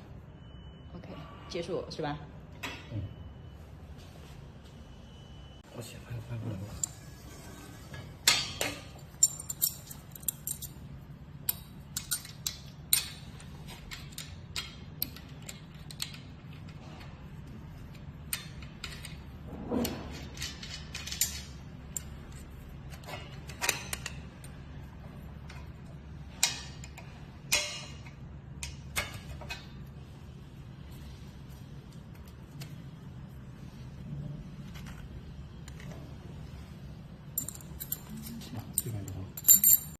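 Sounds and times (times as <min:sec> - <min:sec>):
low steady hum: 0:00.0 - 0:39.9
metal frame parts clinking: 0:08.3 - 0:16.8, 0:18.3 - 0:24.3, 0:37.3 - 0:39.9.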